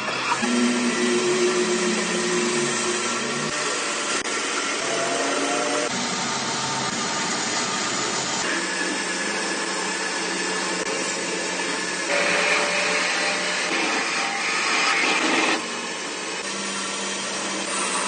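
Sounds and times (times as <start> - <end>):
lathe machining whir: 0.0 - 18.0.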